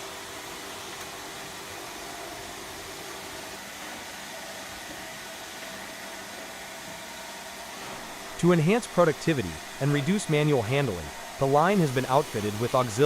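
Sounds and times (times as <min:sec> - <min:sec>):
machine hiss: 0:07.8 - 0:13.0.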